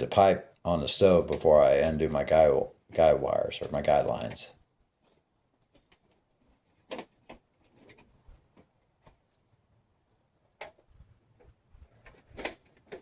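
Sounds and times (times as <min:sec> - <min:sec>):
faint clicks and knocks: 0:05.0 - 0:09.6.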